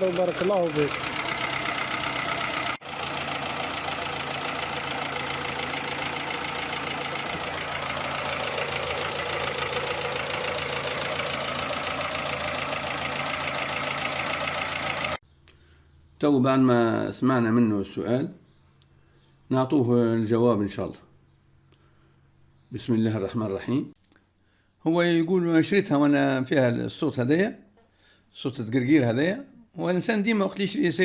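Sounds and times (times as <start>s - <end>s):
car engine running: 0.0s - 15.2s
fast engine ticking: 0.0s - 15.2s.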